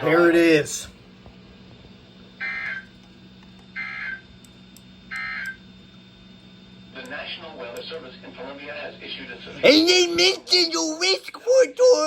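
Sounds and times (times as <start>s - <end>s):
steady low hum: 0.0s - 12.0s
buzzy digital data tones: 2.4s - 2.9s, 3.7s - 4.3s, 5.0s - 5.8s.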